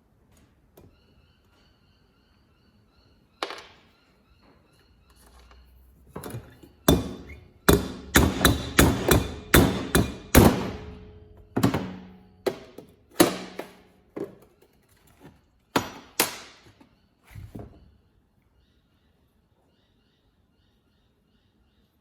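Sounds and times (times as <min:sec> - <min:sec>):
hammer striking metal: 0:06.9 - 0:13.8, 0:15.8 - 0:16.5.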